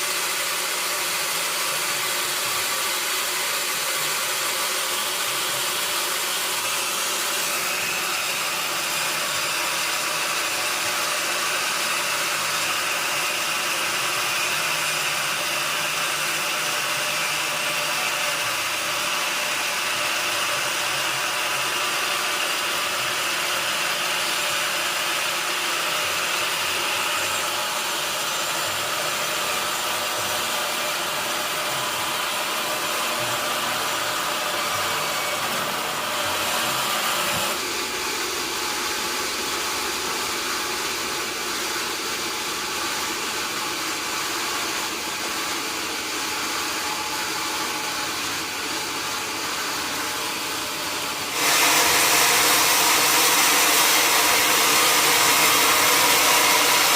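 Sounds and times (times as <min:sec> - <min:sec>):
sawmill machinery whirring: 0:00.0 - 0:56.9.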